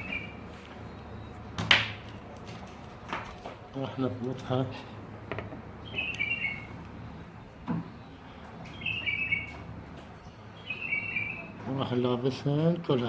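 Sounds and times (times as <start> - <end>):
small bird chirping: 5.8 - 9.6, 10.2 - 11.6.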